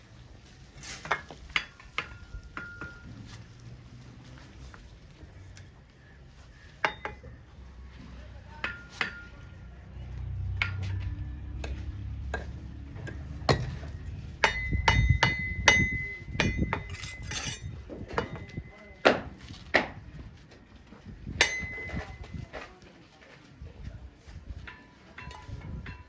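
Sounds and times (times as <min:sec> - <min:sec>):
metal tool knocking on brick: 0:06.8 - 0:07.3, 0:08.6 - 0:09.4, 0:11.7 - 0:19.9.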